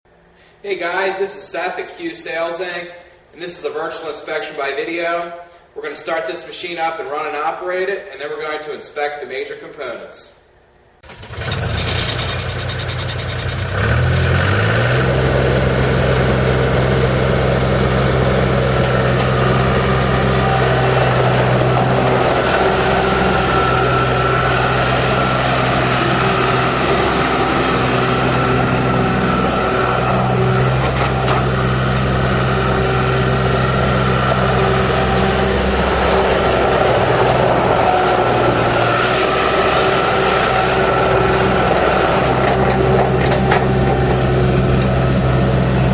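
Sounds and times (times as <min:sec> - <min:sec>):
diesel engine revving: 0:11.0 - 0:45.9.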